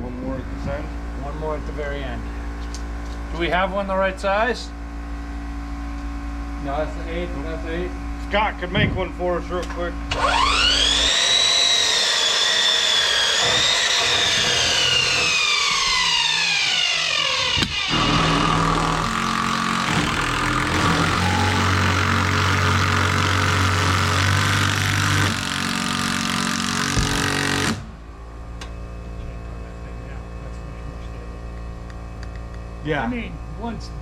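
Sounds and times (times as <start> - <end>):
steady machine noise: 10.0 - 34.0
power saw motor whining: 10.1 - 28.0.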